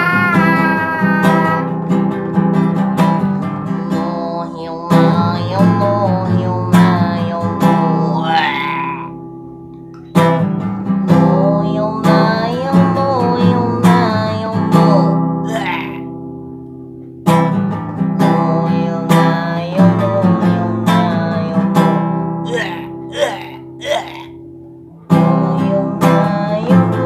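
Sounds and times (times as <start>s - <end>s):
person singing: 0.0s - 2.0s, 2.8s - 9.2s, 11.0s - 16.1s, 18.2s - 24.4s, 25.1s - 27.0s
acoustic guitar strumming chords: 0.0s - 27.0s.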